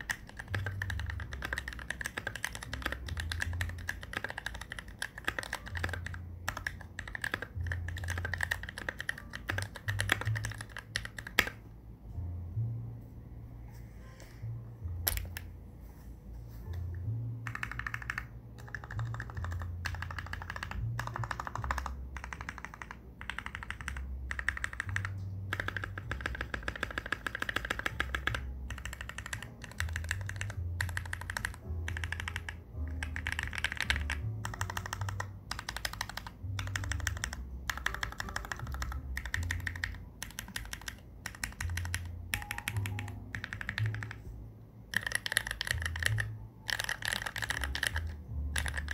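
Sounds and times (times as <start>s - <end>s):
mechanical keyboard typing: 0.0s - 11.6s, 17.4s - 44.3s, 44.9s - 48.9s.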